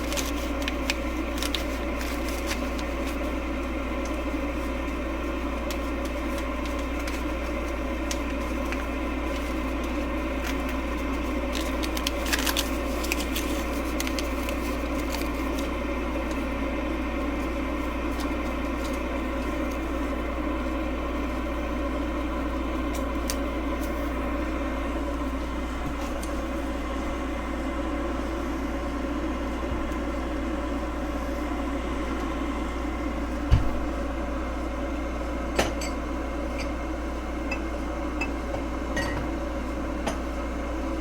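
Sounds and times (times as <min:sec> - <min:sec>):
kettle water hissing: 0:00.0 - 0:25.8.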